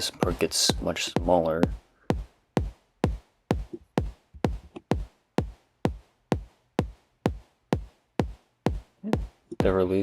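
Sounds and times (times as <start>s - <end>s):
deep drum machine hits: 0.0s - 10.0s.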